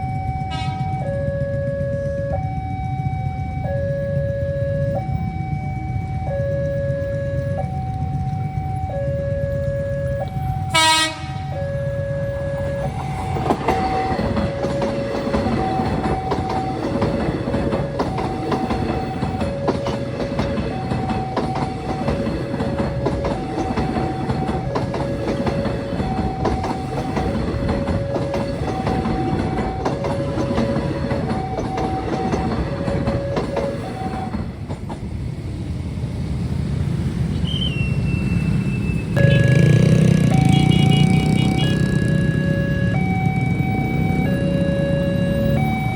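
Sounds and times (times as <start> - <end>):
two-tone level crossing alarm: 0.0 - 34.6, 38.0 - 45.9
train rumble and wheel clatter: 0.0 - 45.9.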